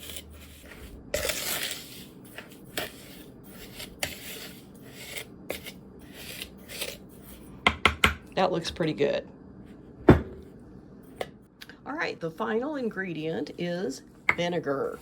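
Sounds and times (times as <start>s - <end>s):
utensil scraping dry mix in bowl: 0.0s - 7.6s, 13.1s - 15.0s.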